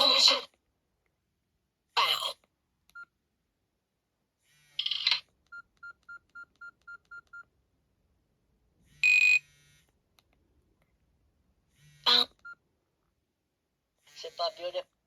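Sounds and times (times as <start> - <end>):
mobile phone ringtone: 9.0 - 9.5.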